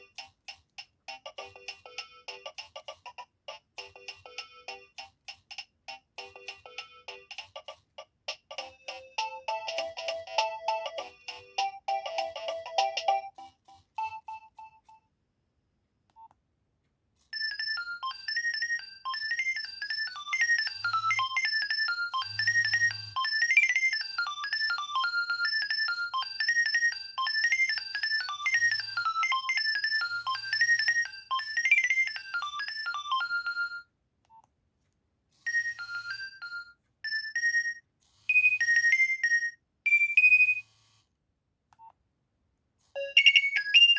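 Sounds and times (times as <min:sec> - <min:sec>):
phone ringtone melodies: 0:08.6 - 0:15.0, 0:17.4 - 0:33.9, 0:35.4 - 0:40.6, 0:43.0 - 0:43.9.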